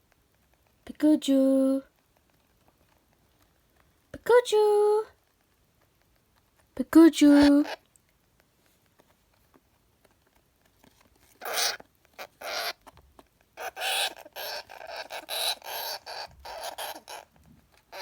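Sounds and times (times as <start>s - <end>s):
hamster screaming: 11.4s - 12.8s, 13.6s - 17.3s.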